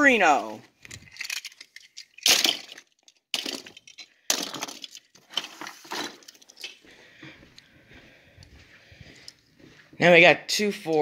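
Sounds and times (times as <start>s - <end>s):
toy cars clattering: 0.0s - 6.8s.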